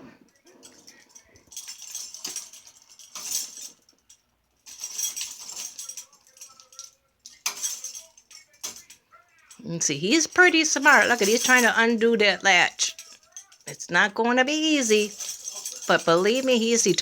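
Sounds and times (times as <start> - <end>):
metal chain clinking and rattling: 0.3 - 17.0.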